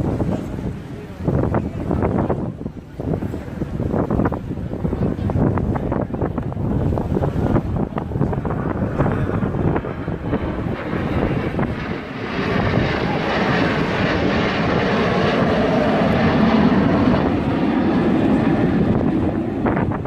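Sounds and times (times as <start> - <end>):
plane flying past: 0.0 - 20.0.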